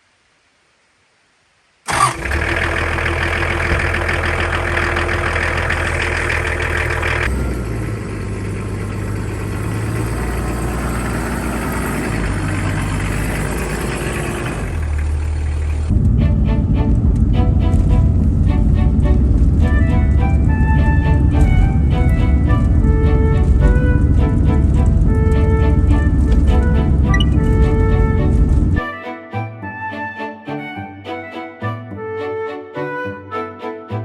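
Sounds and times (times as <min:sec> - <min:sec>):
car engine running: 0:01.9 - 0:28.8.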